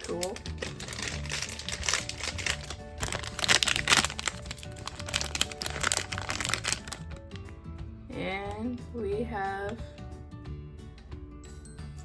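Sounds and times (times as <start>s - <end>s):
plastic bag crinkling: 0.0s - 7.4s
background music: 0.0s - 12.0s.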